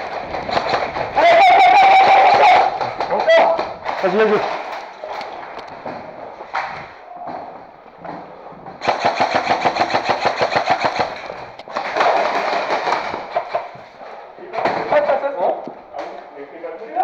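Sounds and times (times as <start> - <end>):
airsoft gun firing full auto: 0.0 - 4.9, 8.8 - 13.7.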